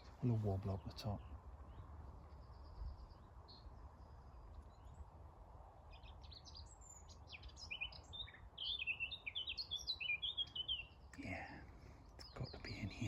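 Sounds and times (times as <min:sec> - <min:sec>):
songbird singing: 0:00.0 - 0:13.0
faint high bird calls: 0:07.4 - 0:13.0.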